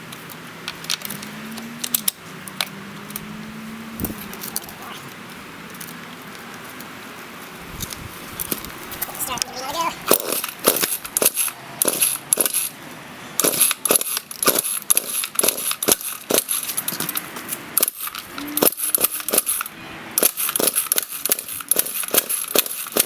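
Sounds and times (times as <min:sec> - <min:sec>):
chainsaw being handled clicking: 0:17.8 - 0:23.0.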